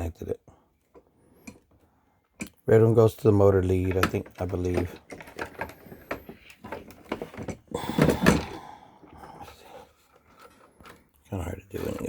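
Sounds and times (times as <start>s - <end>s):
hands handling plastic parts: 3.6s - 12.0s.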